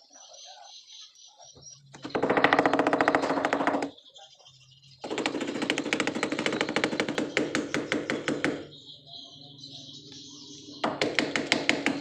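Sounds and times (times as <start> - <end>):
machine hammering rattle: 2.0 - 3.9, 5.0 - 8.7, 10.8 - 12.0.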